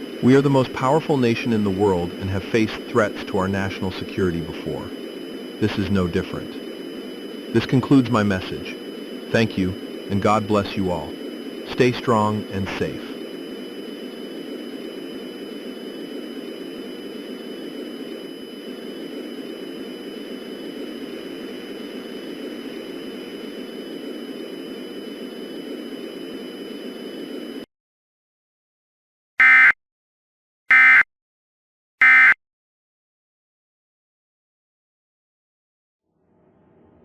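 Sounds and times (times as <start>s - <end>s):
droning hiss with high tones: 0.0s - 27.7s
digital data bursts: 5.6s - 6.6s.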